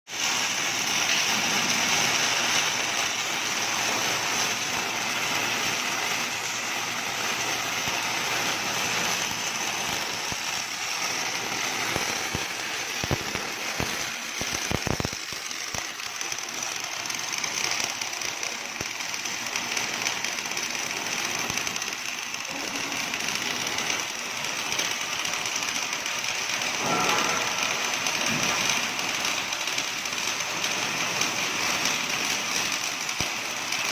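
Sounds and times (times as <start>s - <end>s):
welding arc crackling hiss: 0.1s - 33.9s
sharp clicks: 11.8s - 19.2s.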